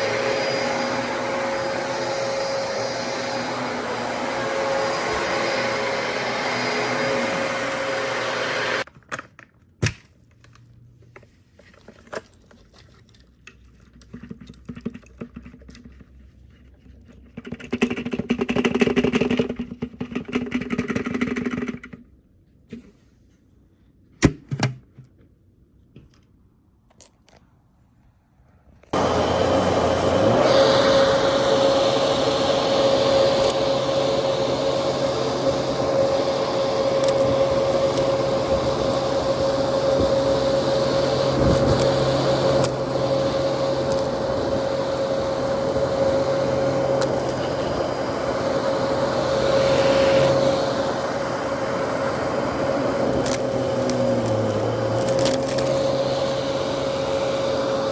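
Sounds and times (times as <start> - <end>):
upright vacuum cleaner running: 0.0 - 8.9, 28.9 - 57.9.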